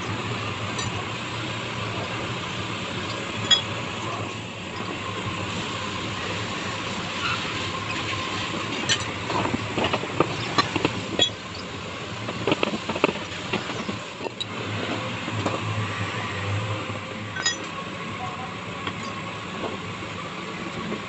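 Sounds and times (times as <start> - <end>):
sharp clicks and knocks: 8.9 - 14.5.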